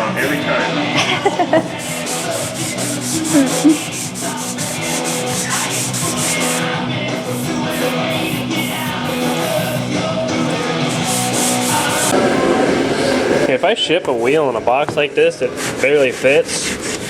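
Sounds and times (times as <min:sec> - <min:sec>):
punk rock music: 0:00.0 - 0:13.6
hand sanding strokes: 0:01.4 - 0:13.5, 0:15.4 - 0:17.0.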